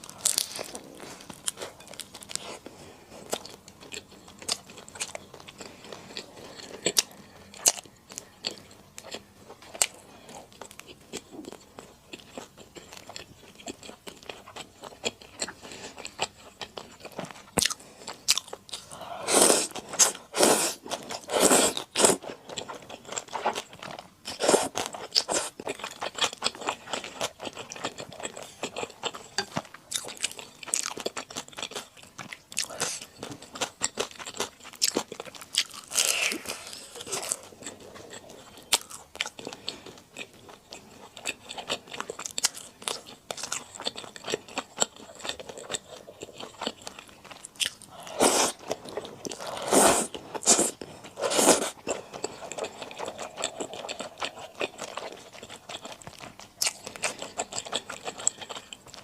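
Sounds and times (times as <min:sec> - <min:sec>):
person chewing noodles: 0:00.0 - 0:59.0.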